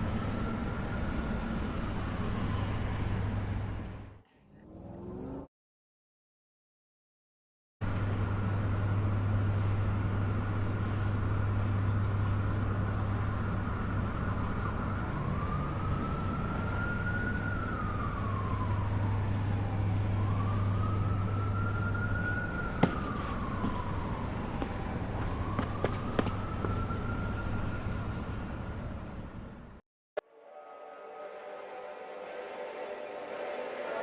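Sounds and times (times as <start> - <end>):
low vehicle hum: 7.8 - 29.8
siren wailing: 12.5 - 28.5.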